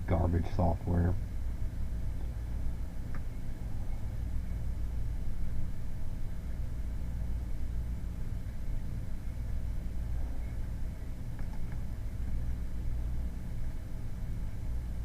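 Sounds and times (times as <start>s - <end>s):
low rumbling hum: 0.0s - 15.0s.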